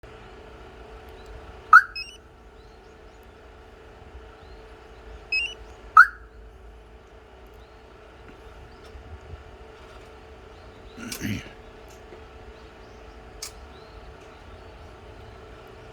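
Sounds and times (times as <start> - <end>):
steady low hum: 0.0 - 15.9
car alarm siren chirps: 1.7 - 2.2, 5.3 - 6.3
soft stepped beeps: 5.3 - 6.2.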